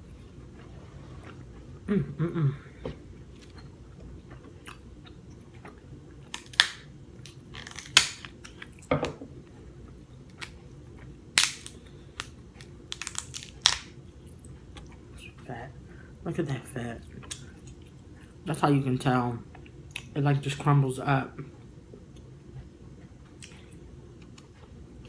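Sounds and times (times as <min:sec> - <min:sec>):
crab shell cracking: 0:06.3 - 0:08.7, 0:11.4 - 0:13.9.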